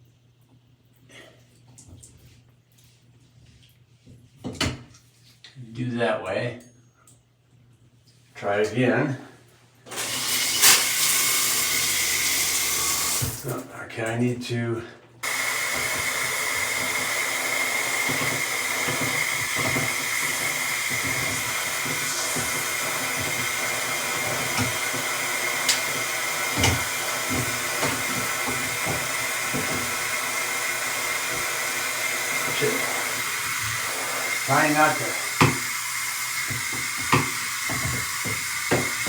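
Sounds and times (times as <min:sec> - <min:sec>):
water rushing through shower head: 0:09.9 - 0:13.6, 0:15.2 - 0:39.0.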